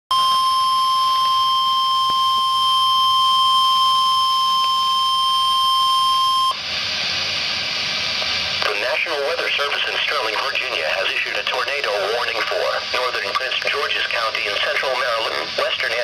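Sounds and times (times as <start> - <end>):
electronic alarm beep: 0.1 - 6.6
radio static hiss: 6.5 - 16.0.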